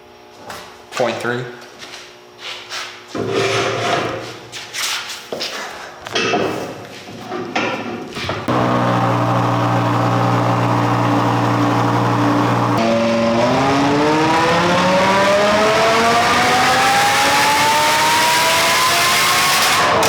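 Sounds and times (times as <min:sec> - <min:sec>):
car engine revving on dyno: 0:08.5 - 0:20.0.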